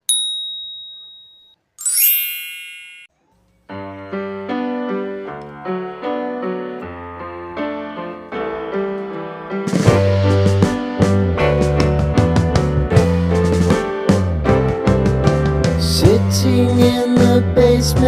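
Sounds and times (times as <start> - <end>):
high ding: 0.0 - 3.2
short sparkling chime: 0.2 - 3.2
piano background music: 3.7 - 18.0.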